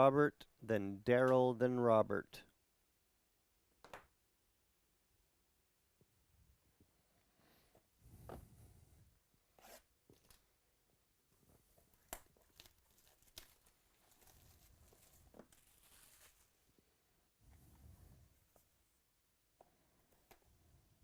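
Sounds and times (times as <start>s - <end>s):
packaging tearing and crinkling: 12.0s - 16.6s.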